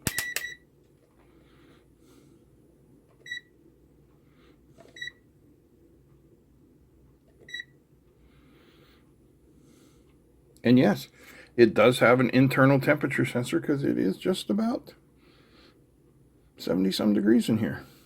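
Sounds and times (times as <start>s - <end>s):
multimeter short high beeps: 0.1s - 0.6s.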